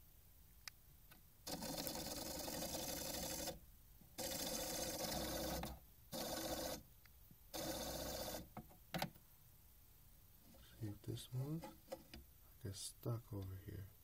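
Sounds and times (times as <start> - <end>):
turntable motor mechanical noise: 7.5 - 8.5.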